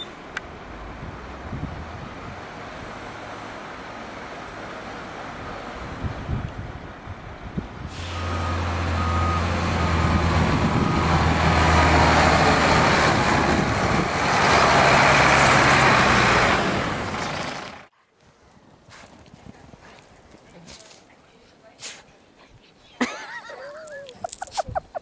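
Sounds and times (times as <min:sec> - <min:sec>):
truck engine droning: 0:07.7 - 0:17.9
reversing beeps: 0:08.0 - 0:11.3.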